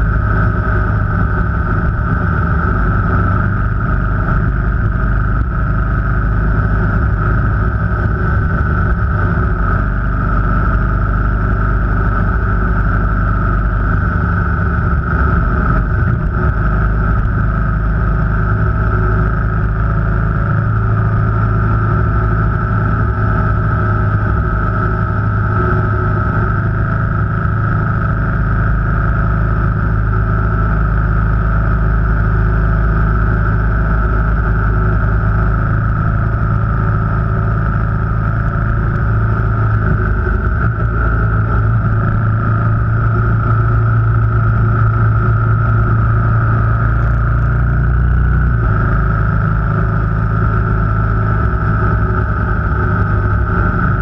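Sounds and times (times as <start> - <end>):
vehicle engine and road noise: 0.0 - 54.0.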